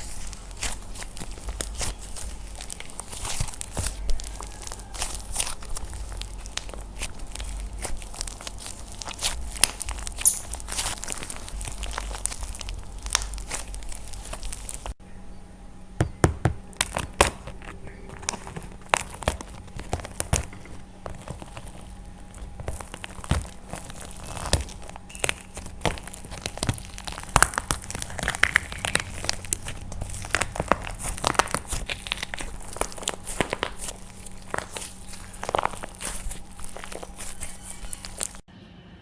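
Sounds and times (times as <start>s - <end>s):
plaster crushed by hand cracking: 16.0s - 38.5s.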